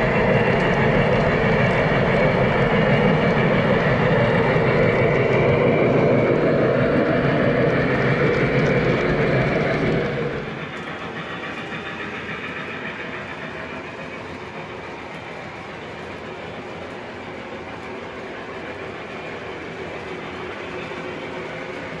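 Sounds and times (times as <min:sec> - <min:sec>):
model train wheels rattling: 0:06.8 - 0:22.0.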